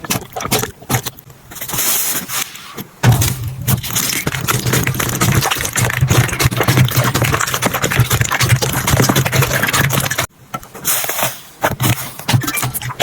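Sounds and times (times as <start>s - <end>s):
slime crackling and popping: 3.0s - 10.3s.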